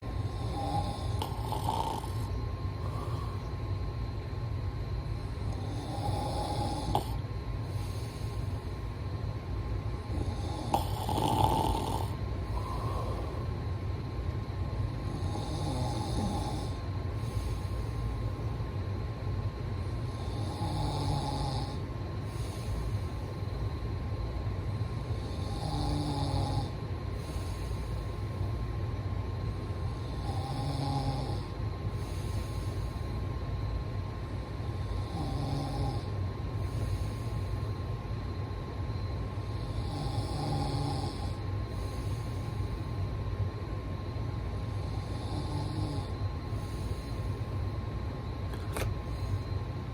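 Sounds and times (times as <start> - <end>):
steady low rumble: 0.0 - 25.8, 26.5 - 49.9
person snoring: 0.2 - 3.5, 5.4 - 8.5, 10.0 - 13.5, 15.0 - 18.0, 19.9 - 23.1, 25.1 - 28.0, 29.9 - 33.1, 34.8 - 37.6, 39.4 - 42.6, 44.6 - 47.4
hissing breath: 0.3 - 3.6, 10.2 - 13.6.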